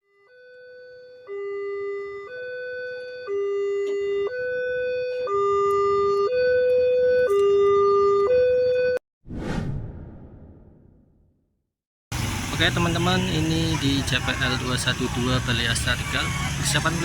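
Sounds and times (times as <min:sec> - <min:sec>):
two-tone level crossing siren: 0:00.0 - 0:09.0, 0:12.6 - 0:17.0.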